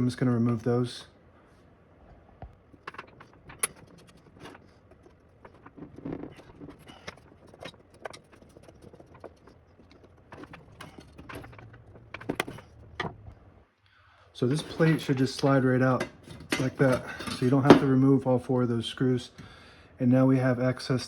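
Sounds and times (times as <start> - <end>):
screwdriver metal clicks and scrapes: 2.7 - 13.2.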